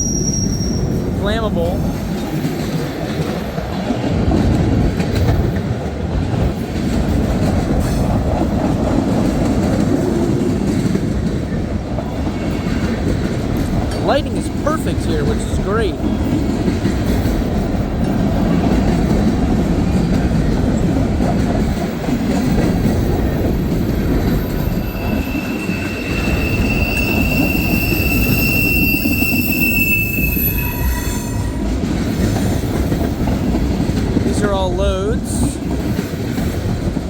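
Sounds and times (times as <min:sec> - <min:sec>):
high wheel squeal: 0:00.0 - 0:01.1, 0:24.2 - 0:31.8
train wheels rumbling on rails: 0:00.0 - 0:37.0.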